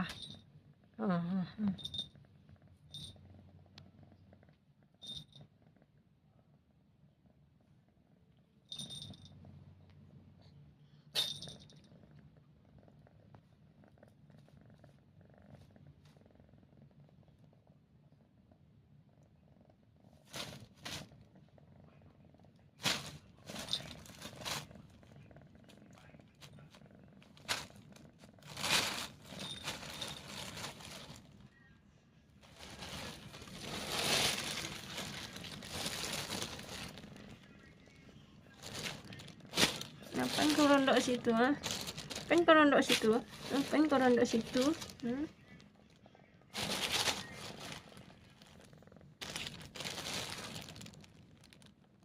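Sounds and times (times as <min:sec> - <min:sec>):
cat purring: 0:00.0 - 0:52.0
rustling and crinkling: 0:20.2 - 0:21.3, 0:22.8 - 0:31.5, 0:32.4 - 0:52.0.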